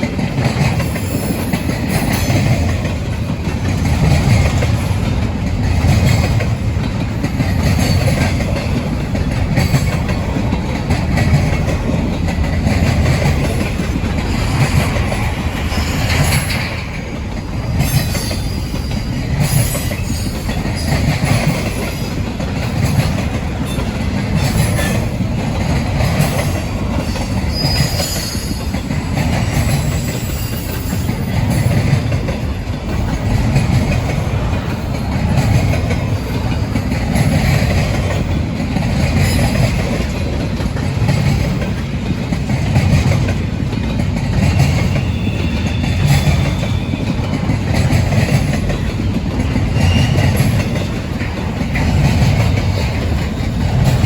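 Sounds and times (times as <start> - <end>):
train wheels rumbling on rails: 0.0 - 54.0
wheel squeal: 27.2 - 28.8, 29.6 - 31.7, 44.6 - 47.3, 49.4 - 50.9.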